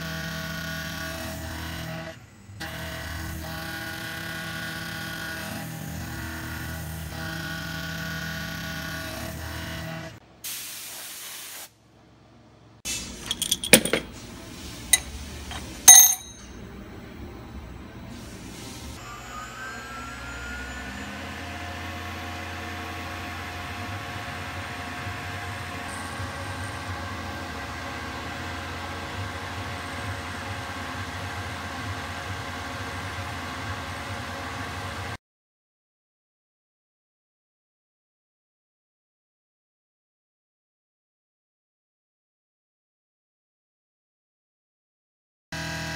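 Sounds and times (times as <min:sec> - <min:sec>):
metallic clinks and taps: 0:13.2 - 0:14.1, 0:15.0 - 0:16.5.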